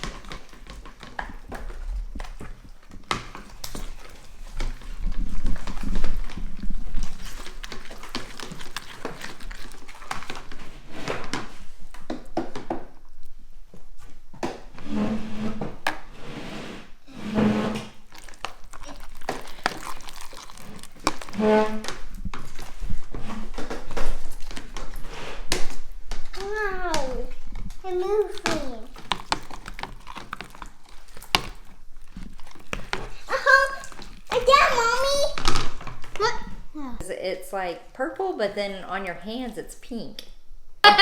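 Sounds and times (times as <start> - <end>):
spoon stirring slime in bowl: 0.0 - 11.6, 17.2 - 36.3.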